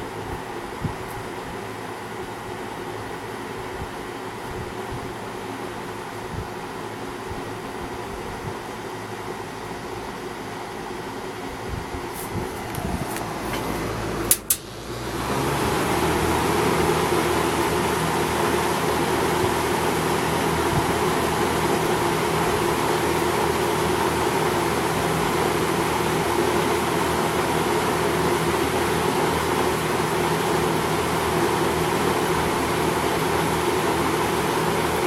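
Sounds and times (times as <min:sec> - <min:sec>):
box fan running: 0:00.0 - 0:35.0
fan switch clicks: 0:12.2 - 0:14.8.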